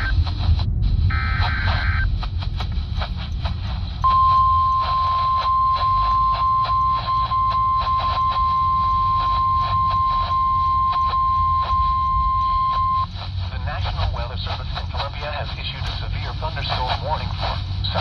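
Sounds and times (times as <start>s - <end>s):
crackling pops: 0.0s - 18.0s
radio static hiss: 0.0s - 18.0s
high warning alarm tone: 1.1s - 2.1s, 4.0s - 13.1s.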